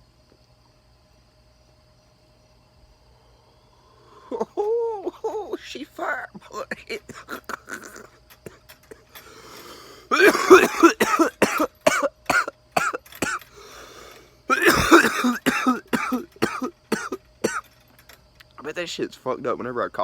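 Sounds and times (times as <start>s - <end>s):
man coughing: 6.4s - 9.2s, 10.1s - 13.5s, 14.5s - 17.7s.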